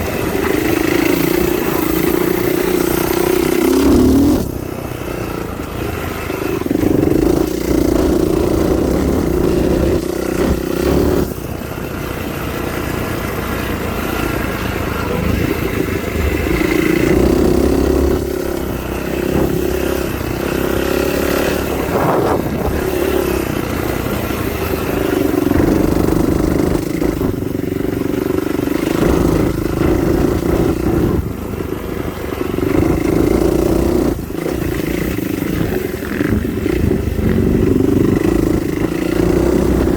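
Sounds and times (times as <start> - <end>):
vehicle engine running: 0.0 - 39.9.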